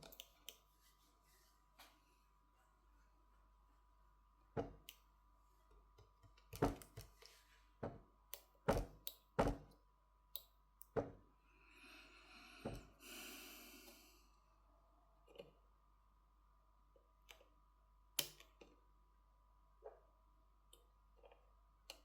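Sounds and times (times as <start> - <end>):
soft rustle: 0.6 - 3.9.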